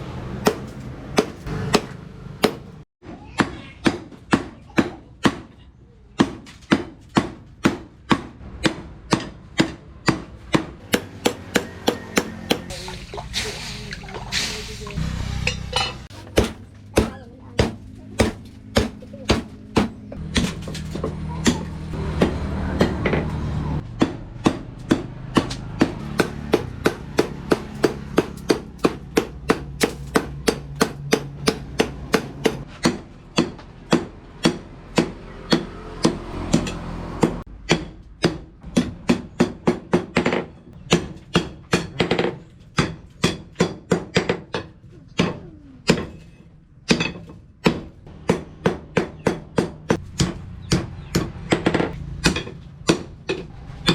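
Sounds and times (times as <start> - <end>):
hammer striking metal: 0.4 - 2.8, 10.8 - 12.8, 15.5 - 20.5, 25.8 - 35.7.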